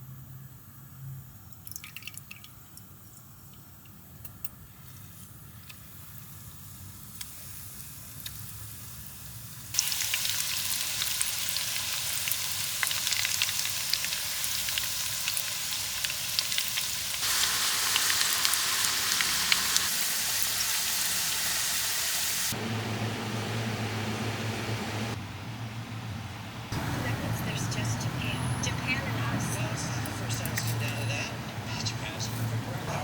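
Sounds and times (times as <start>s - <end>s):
chips sizzling in oil: 5.9s - 22.6s
steady low hum: 22.5s - 33.0s.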